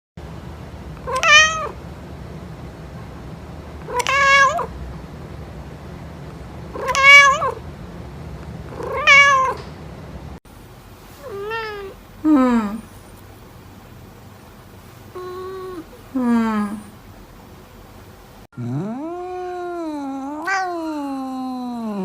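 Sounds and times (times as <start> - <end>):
faint low hum: 0.2 - 22.0
cat meowing: 1.0 - 1.8, 3.9 - 4.7, 6.8 - 7.6, 8.8 - 9.6, 11.2 - 12.0, 19.0 - 21.3.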